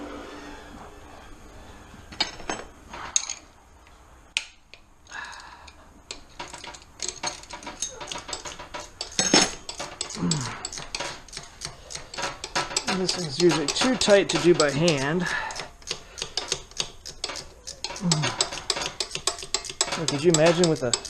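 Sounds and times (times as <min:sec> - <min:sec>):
ratchet wrench clicking: 0:06.1 - 0:21.0
wrench clinking on bolt: 0:06.1 - 0:21.0.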